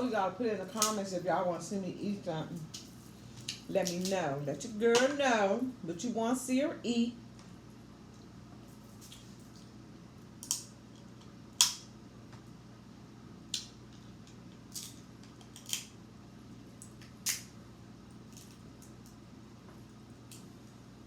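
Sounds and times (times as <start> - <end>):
crab shells cracking: 10.3 - 12.0, 13.5 - 16.0, 16.8 - 17.6, 18.2 - 19.2.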